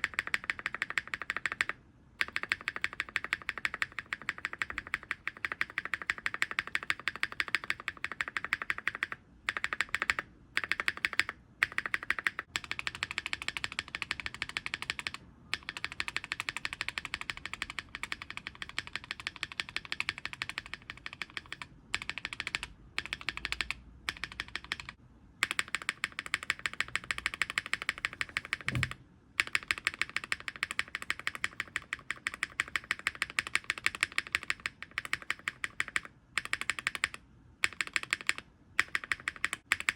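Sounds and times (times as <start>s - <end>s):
keyboard spacebar clacking: 25.6s - 29.0s.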